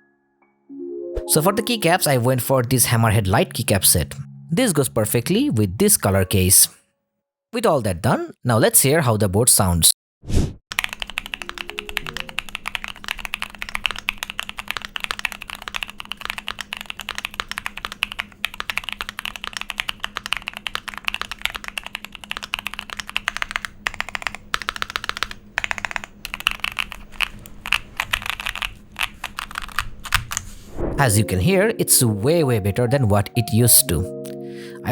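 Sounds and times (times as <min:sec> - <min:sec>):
keyboard typing: 0:10.7 - 0:30.5.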